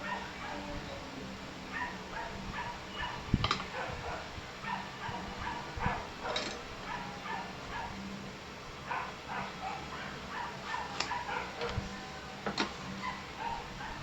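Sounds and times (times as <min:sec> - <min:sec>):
dog yipping and whimpering: 0:00.0 - 0:00.8, 0:01.7 - 0:08.0, 0:08.9 - 0:12.0, 0:13.0 - 0:14.0.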